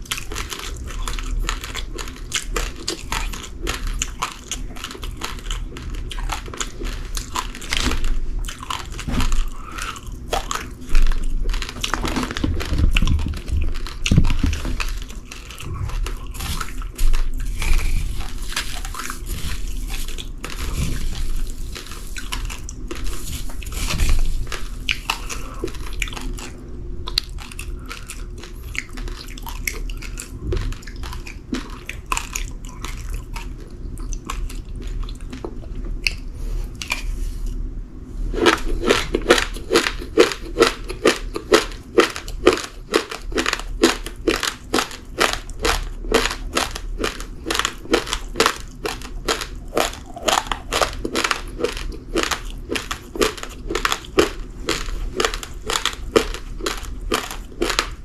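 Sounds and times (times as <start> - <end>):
person chewing crunchy rice: 0.0 - 58.0.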